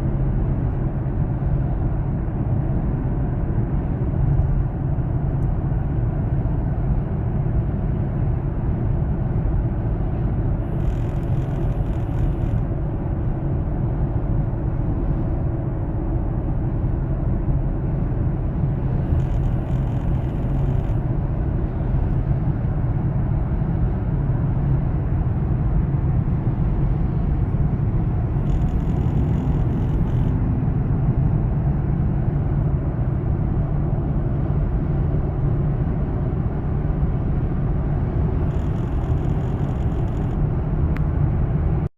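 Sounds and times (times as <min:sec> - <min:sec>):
low vehicle rumble: 0:00.0 - 0:41.9
high-pitched chirping and clicking: 0:10.7 - 0:12.6, 0:19.1 - 0:21.0, 0:28.4 - 0:30.4, 0:38.5 - 0:40.4.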